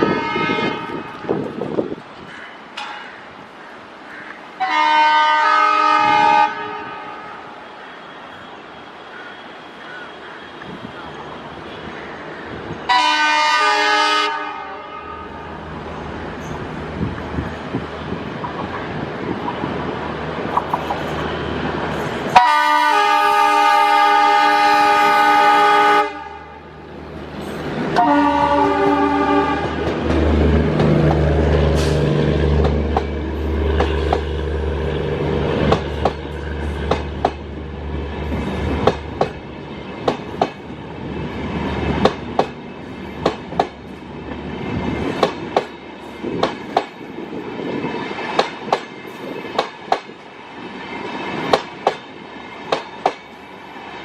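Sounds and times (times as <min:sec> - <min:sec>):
locomotive horn: 0:00.0 - 0:01.5, 0:04.6 - 0:08.5, 0:12.9 - 0:15.6, 0:22.3 - 0:26.7, 0:27.9 - 0:30.1
train wheels clicking on rail joints: 0:00.8 - 0:03.6, 0:15.7 - 0:22.5, 0:27.0 - 0:53.9
locomotive engine droning: 0:03.9 - 0:54.0.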